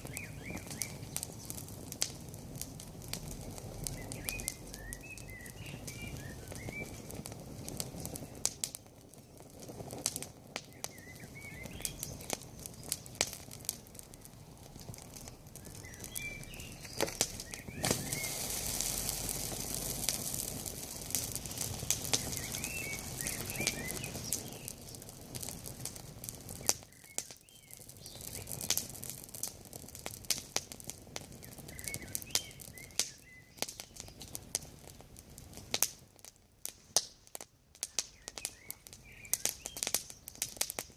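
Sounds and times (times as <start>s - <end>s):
songbird chirping: 0.0s - 1.6s, 3.9s - 7.1s, 10.6s - 13.2s, 15.2s - 18.4s, 21.4s - 25.0s, 38.0s - 40.3s
campfire crackling and popping: 0.0s - 40.9s
rushing hiss: 16.8s - 24.5s.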